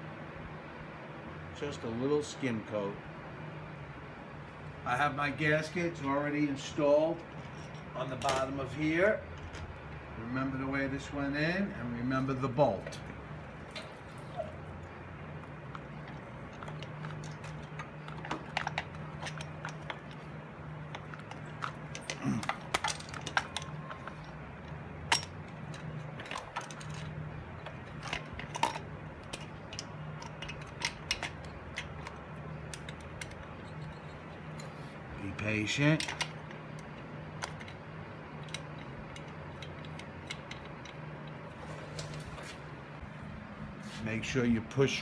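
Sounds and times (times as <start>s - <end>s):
metal parts clicking: 15.7s - 34.9s, 35.7s - 42.2s.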